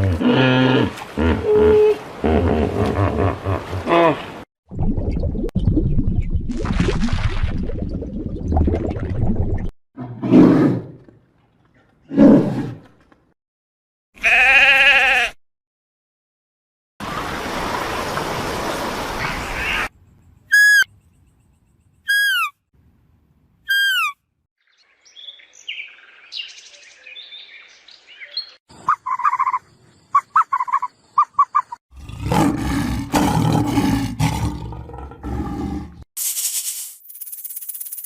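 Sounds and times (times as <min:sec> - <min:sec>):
short clipped calls: 0:20.5 - 0:20.9, 0:22.1 - 0:22.6, 0:23.7 - 0:24.2
short falling animal calls: 0:23.7 - 0:24.2.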